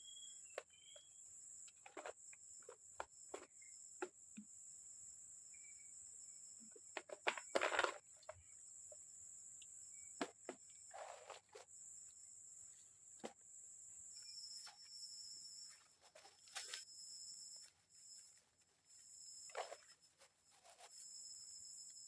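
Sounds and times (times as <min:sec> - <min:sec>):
insects droning: 0:00.0 - 0:22.0
rustling in undergrowth: 0:15.6 - 0:21.2.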